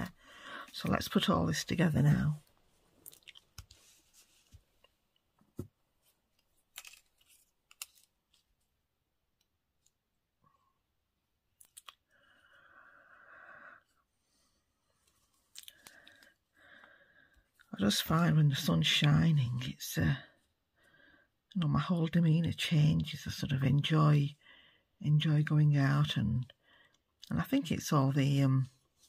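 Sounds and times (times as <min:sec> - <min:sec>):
paper rustling: 0:05.6 - 0:08.7.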